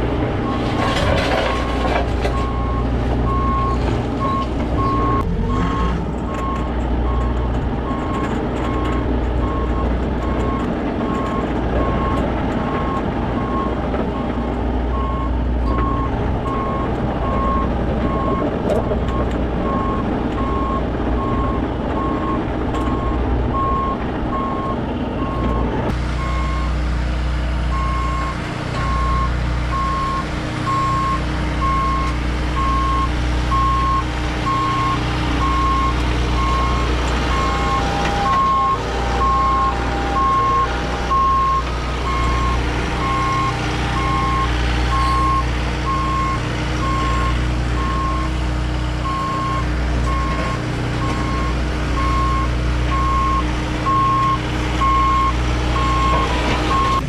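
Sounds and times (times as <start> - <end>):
diesel engine running: 0.0 - 57.0
backup alarm beeping: 27.7 - 48.3.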